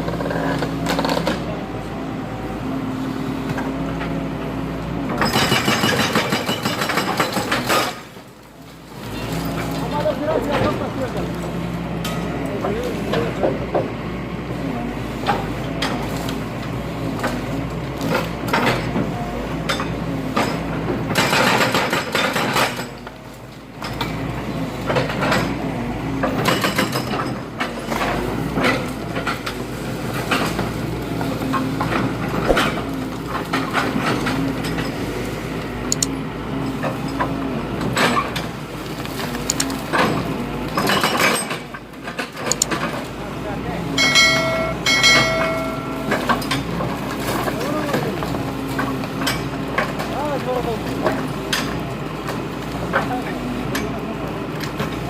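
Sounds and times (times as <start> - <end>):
excavator engine running: 0.0 - 55.0
hydraulic hammer clanks and knocks: 5.1 - 8.2, 19.6 - 23.1, 39.6 - 43.0, 44.0 - 46.8.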